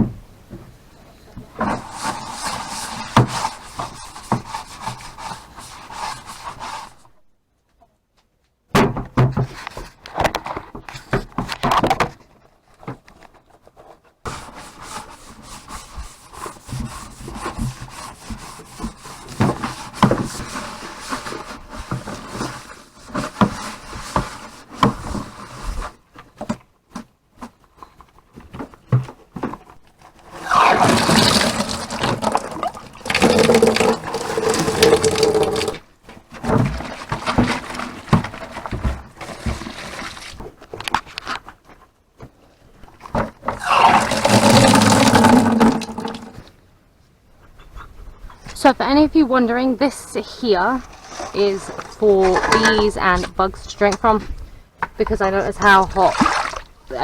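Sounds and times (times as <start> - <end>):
knocks and handling noise: 16.0 - 46.6
water pouring into container: 30.4 - 35.8, 39.2 - 40.4, 43.6 - 46.4.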